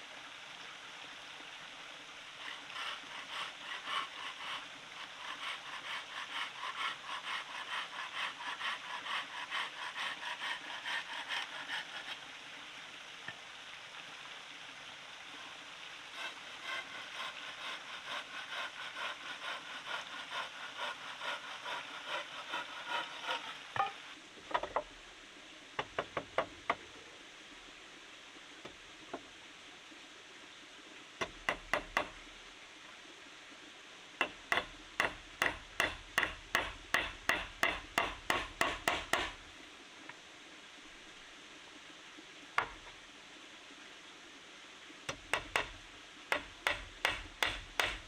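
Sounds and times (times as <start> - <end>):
hand saw cutting wood: 2.4 - 12.2, 16.1 - 24.1, 34.2 - 39.4, 45.1 - 48.0
sharp wooden knocks: 31.2 - 32.2, 34.2 - 39.4, 42.6 - 42.8, 45.1 - 48.0.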